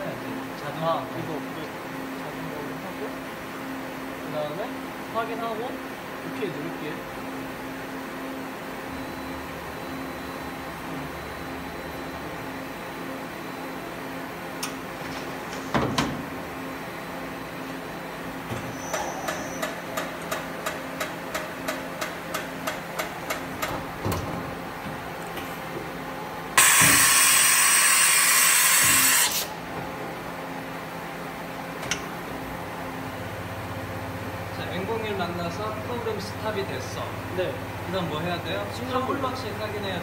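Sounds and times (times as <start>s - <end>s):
machine humming: 10.4s - 40.0s
compressed air hissing: 26.6s - 29.5s.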